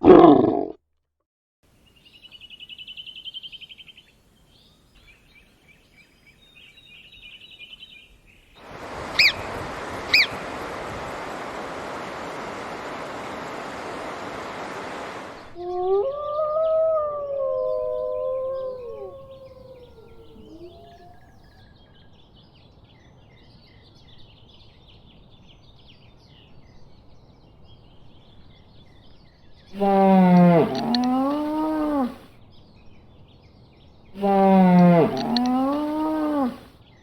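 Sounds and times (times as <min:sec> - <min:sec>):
low animal call dipping in pitch: 0:00.0 - 0:00.8, 0:29.8 - 0:32.2, 0:34.2 - 0:36.7
gliding howling calls: 0:08.7 - 0:21.5, 0:29.8 - 0:32.2, 0:34.2 - 0:36.7
faint bird chirping: 0:09.2 - 0:10.4, 0:15.4 - 0:37.0.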